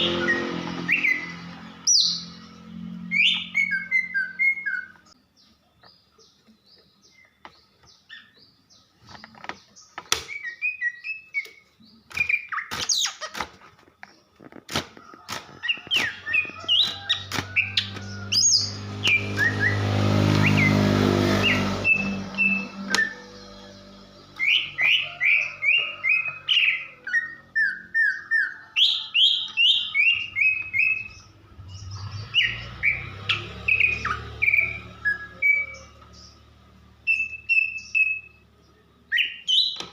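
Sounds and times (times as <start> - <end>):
bird chirping and whistling: 0.0 - 5.1, 10.2 - 13.3, 15.6 - 36.4, 37.0 - 38.4, 39.1 - 39.9
low musical backing: 18.2 - 25.4.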